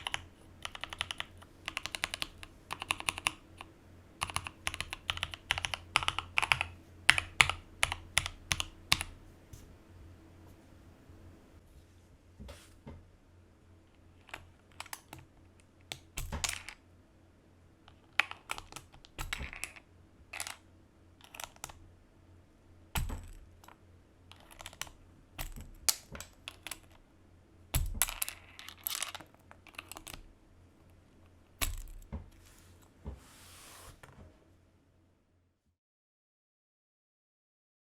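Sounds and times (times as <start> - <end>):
mechanical keyboard typing: 0.0 - 9.2, 14.2 - 16.8, 17.9 - 20.6, 21.2 - 21.8, 23.0 - 27.0, 27.8 - 30.3, 31.5 - 32.1.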